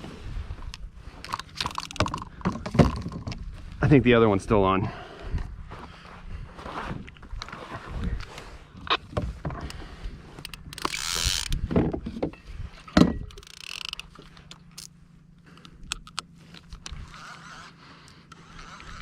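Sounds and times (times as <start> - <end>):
fishing reel clicking: 1.2 - 2.3, 10.4 - 11.6, 13.3 - 14.9, 15.6 - 19.0.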